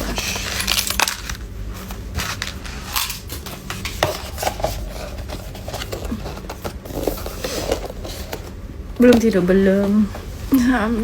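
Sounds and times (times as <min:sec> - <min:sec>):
gift packaging crumpling and tearing: 0:00.0 - 0:03.3.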